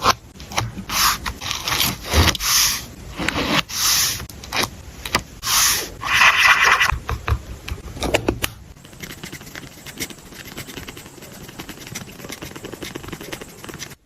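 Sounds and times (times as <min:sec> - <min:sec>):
paper and stickers handled: 0:08.8 - 0:14.0.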